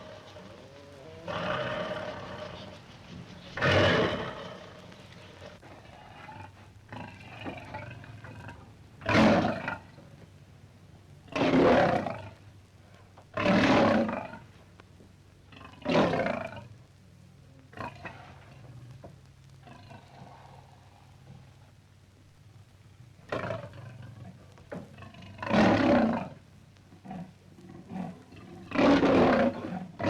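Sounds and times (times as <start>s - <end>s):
lion roaring: 0.0s - 9.9s, 11.3s - 12.4s, 13.4s - 14.4s, 25.0s - 26.4s, 27.0s - 30.0s.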